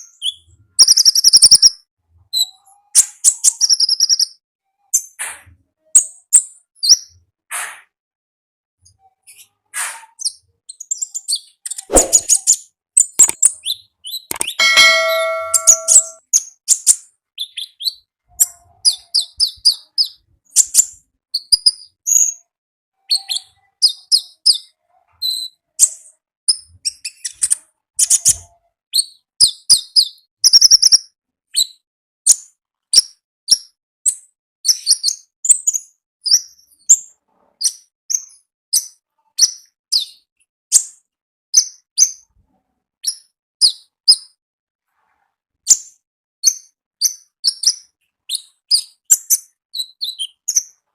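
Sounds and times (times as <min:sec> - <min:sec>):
bird chirping high notes: 0:14.6 - 0:16.2.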